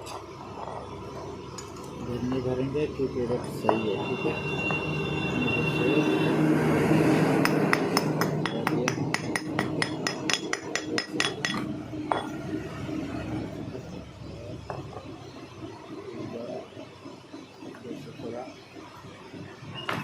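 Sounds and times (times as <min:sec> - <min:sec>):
hammer tapping on metal: 0:07.4 - 0:12.4.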